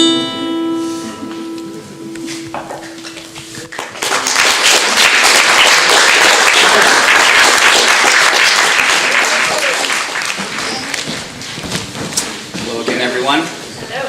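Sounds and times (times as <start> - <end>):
plucked string note ringing: 0.0 - 3.7
audience applause: 3.6 - 11.4.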